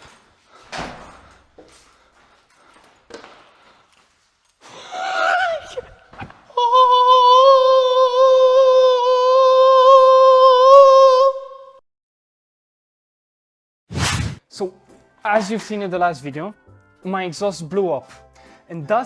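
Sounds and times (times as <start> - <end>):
person singing long held note: 6.5 - 11.8.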